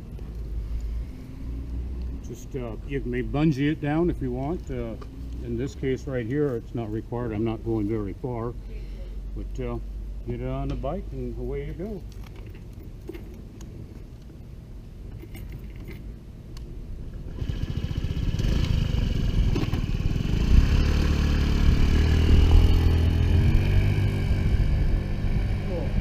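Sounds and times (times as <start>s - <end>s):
scooter engine idling and revving: 17.3s - 26.0s.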